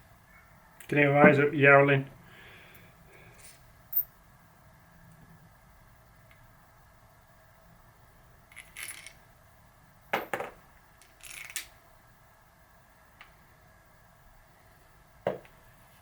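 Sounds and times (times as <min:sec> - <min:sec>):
small metal parts rattling: 0:08.5 - 0:09.2, 0:11.0 - 0:11.8.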